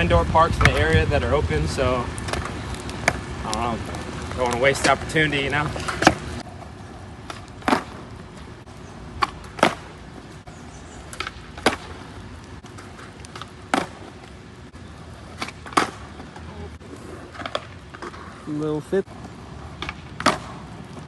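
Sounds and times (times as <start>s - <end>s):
skateboard rolling on wet ground: 0.0s - 21.0s
skateboard clacks: 2.0s - 8.5s, 9.2s - 10.1s, 11.0s - 14.4s, 15.1s - 16.7s, 19.0s - 21.0s.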